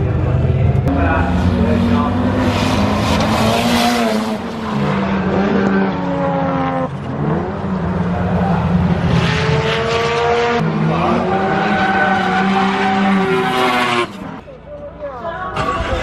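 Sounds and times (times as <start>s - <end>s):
racing car engines revving: 0.0s - 14.4s.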